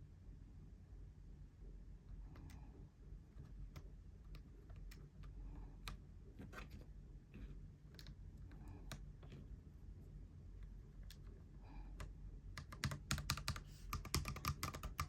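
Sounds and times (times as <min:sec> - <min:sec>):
mechanical keyboard keystrokes: 0:12.6 - 0:15.0.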